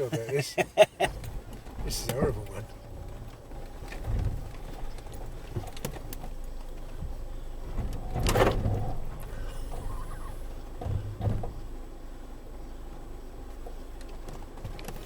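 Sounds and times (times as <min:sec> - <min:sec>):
vehicle engine low rumble: 0:00.0 - 0:15.0
clicks and knocks from suspension: 0:01.1 - 0:09.4, 0:14.0 - 0:15.0.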